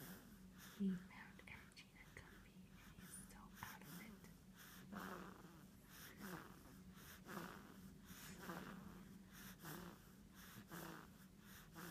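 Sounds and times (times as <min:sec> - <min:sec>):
faint low hum: 0:00.0 - 0:11.9
soft snoring: 0:00.0 - 0:11.9.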